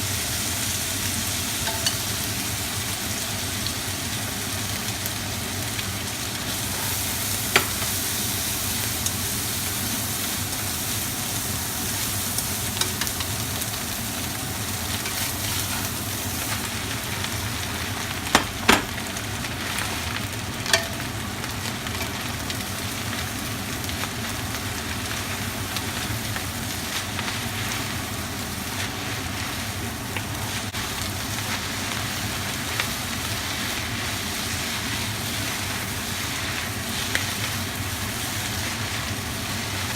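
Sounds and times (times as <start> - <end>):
food sizzling in a pan: 0.0 - 39.9
utensil clinking against pan: 1.6 - 2.0.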